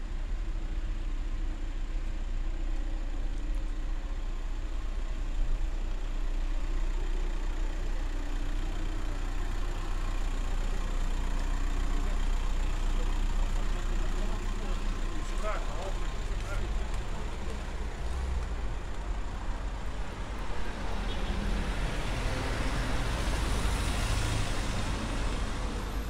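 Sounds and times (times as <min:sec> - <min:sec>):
vehicle engine idling: 0:00.0 - 0:26.0.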